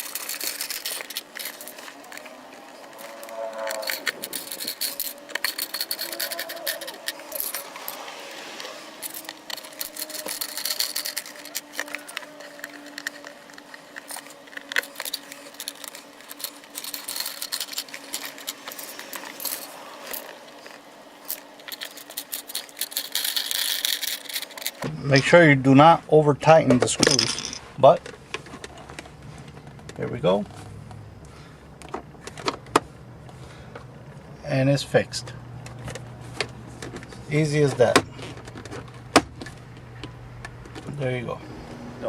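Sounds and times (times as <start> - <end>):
plastic and metal clicks and rattles: 0.0 - 8.0, 9.0 - 24.8.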